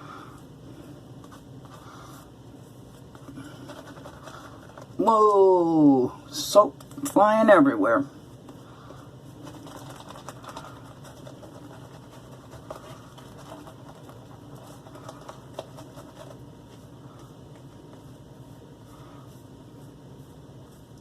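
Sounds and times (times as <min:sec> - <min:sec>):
shaving brush whisking lather: 0:09.2 - 0:21.0.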